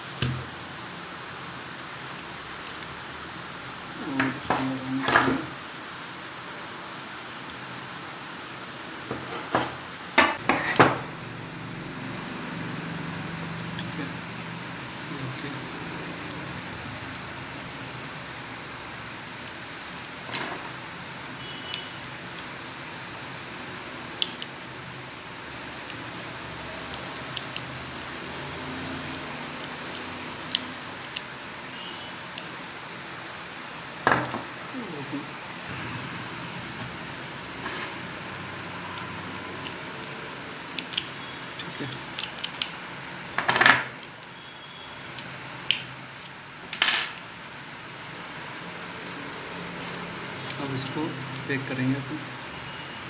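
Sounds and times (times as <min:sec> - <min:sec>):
small metal clicks: 0:40.8 - 0:42.8
small metal parts clinking: 0:45.2 - 0:47.3.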